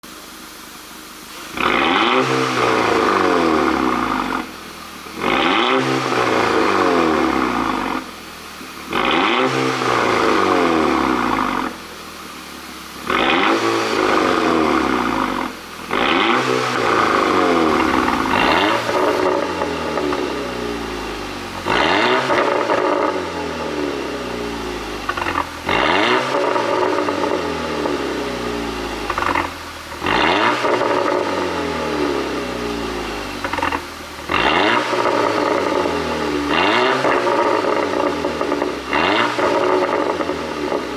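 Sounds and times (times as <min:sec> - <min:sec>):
car engine revving: 0:01.4 - 0:40.9
exhaust pops and crackles: 0:13.0 - 0:20.4, 0:21.6 - 0:23.2, 0:25.0 - 0:28.2, 0:29.0 - 0:31.6, 0:33.4 - 0:40.9.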